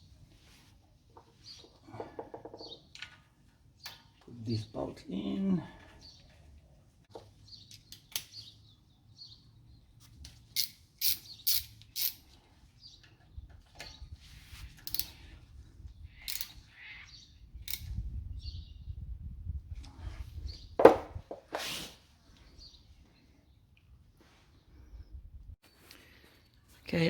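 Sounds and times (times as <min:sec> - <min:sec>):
metallic clicks of hand tools: 0:10.6 - 0:12.3, 0:14.8 - 0:15.2, 0:16.2 - 0:16.6.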